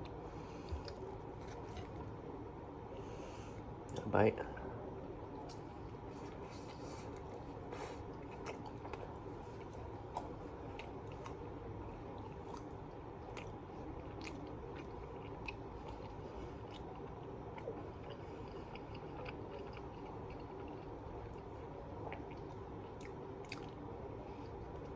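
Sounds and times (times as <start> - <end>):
chewing food: 0.0 - 2.1, 5.3 - 24.9
steady low hum: 0.0 - 24.9.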